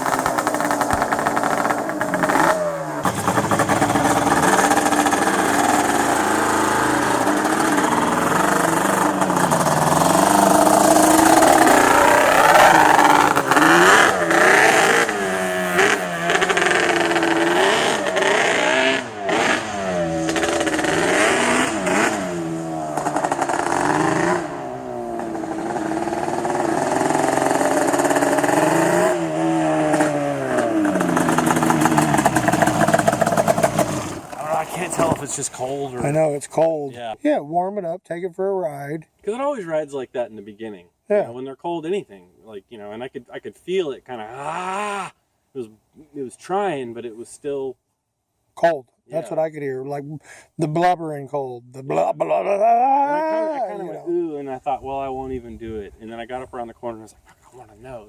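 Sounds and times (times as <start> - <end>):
two-stroke engine revving: 0.0 - 36.1.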